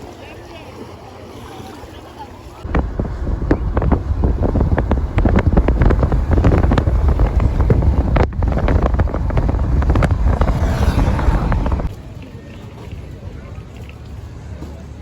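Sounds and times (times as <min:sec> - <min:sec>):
wind buffeting microphone: 0:02.6 - 0:13.6
knocks and water splashes: 0:02.6 - 0:14.8.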